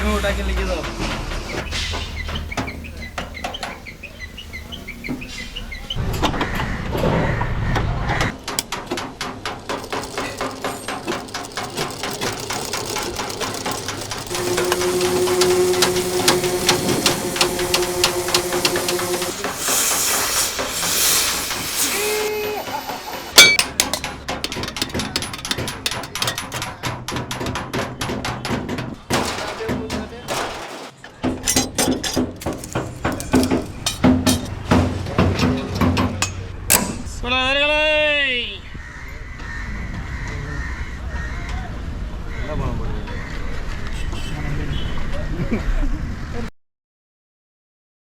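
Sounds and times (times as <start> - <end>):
scrap metal strikes and clatter: 8.3 - 27.8, 29.0 - 37.2
steady hum: 14.3 - 25.1
brief hiss: 14.4 - 23.3
loud metal clang: 23.3 - 26.8, 29.0 - 37.2.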